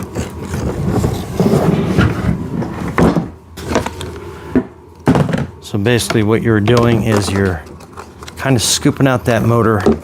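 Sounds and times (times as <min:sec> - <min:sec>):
plastic parts rustling and clattering: 0:06.8 - 0:08.9.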